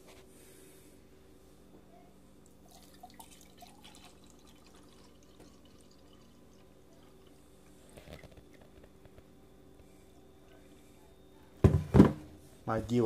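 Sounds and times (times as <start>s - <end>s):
steady low hum: 0.0s - 13.0s
water dripping into a container: 2.7s - 7.5s.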